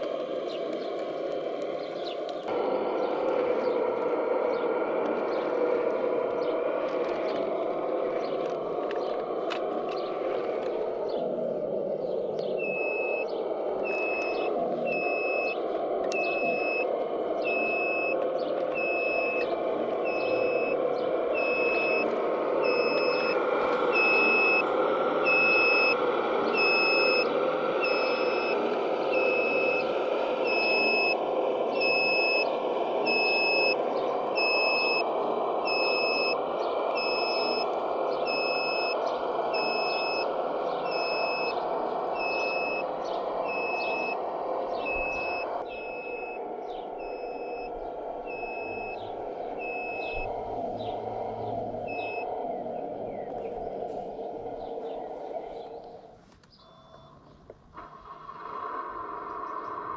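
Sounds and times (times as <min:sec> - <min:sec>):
mechanical whir of motors: 0:00.0 - 0:59.9
reversing alarm beeping: 0:12.4 - 0:55.6, 0:56.6 - 0:58.6.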